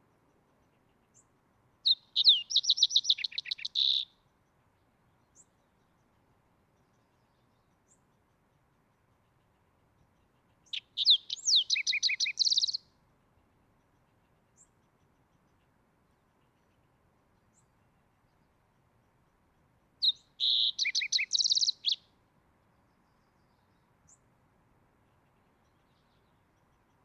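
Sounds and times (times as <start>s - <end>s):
bird singing whistles and trill: 1.9s - 4.1s, 10.7s - 12.8s, 20.0s - 22.0s.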